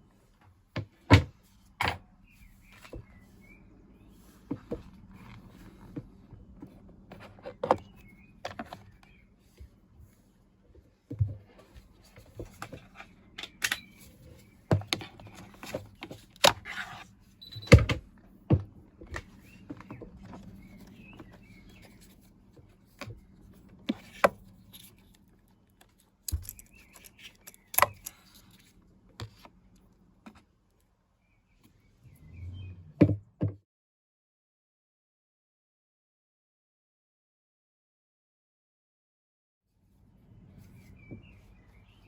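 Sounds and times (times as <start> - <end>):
tools clattering: 26.3 - 28.7.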